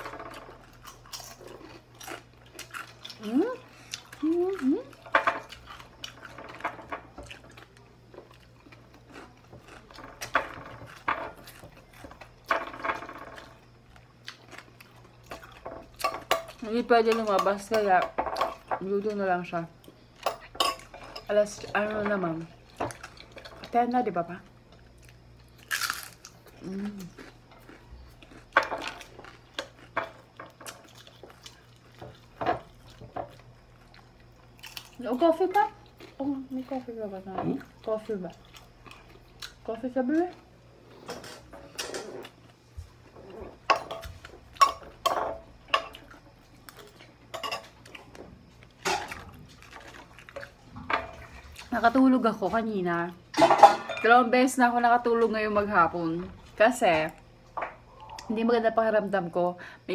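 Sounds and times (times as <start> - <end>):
chewing crunchy fried fish: 0.1 - 16.6, 24.5 - 45.0, 45.6 - 51.8
cutlery clinking on a plate: 53.4 - 54.2.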